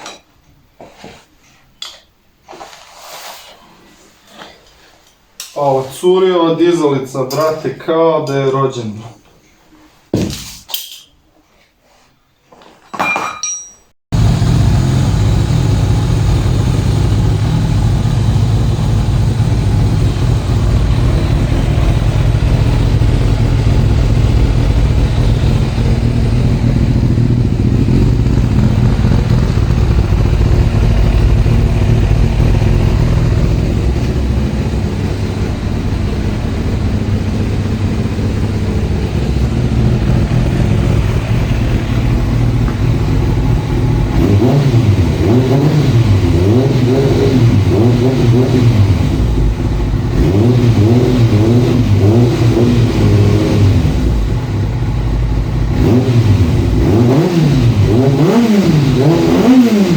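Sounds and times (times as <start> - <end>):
motorcycle engine running: 14.2 - 59.9.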